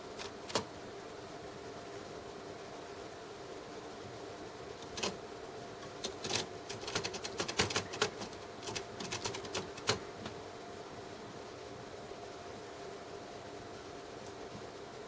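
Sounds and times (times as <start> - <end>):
typewriter keys clacking: 4.8 - 5.2, 5.8 - 10.0.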